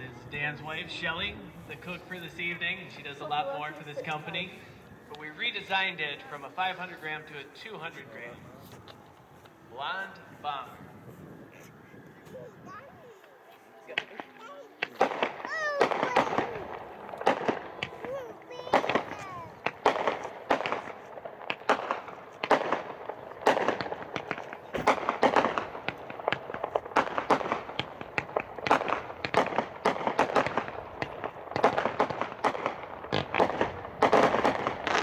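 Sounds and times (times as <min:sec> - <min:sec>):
fireworks firing rapid bangs: 0:14.0 - 0:35.0.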